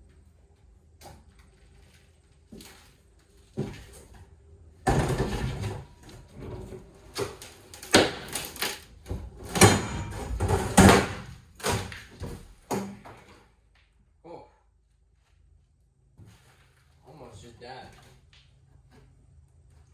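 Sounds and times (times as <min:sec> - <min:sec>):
metal parts knocking and clanking: 0:09.5 - 0:11.2.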